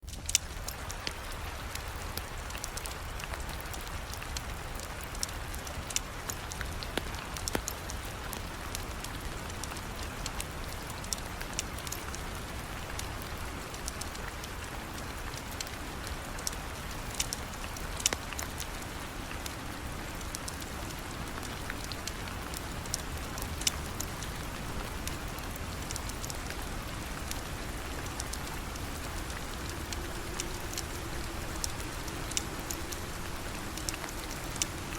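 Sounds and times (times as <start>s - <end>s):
sharp clicks and pops: 0.0s - 1.2s
steady rain falling: 0.0s - 34.9s.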